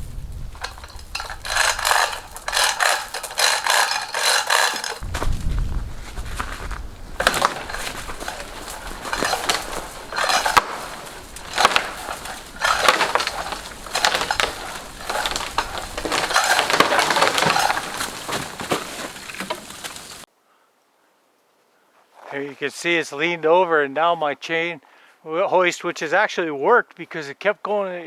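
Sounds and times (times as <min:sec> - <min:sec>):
branches snapping and crashing: 0:00.0 - 0:20.3
tree cracking and splintering: 0:00.0 - 0:20.3.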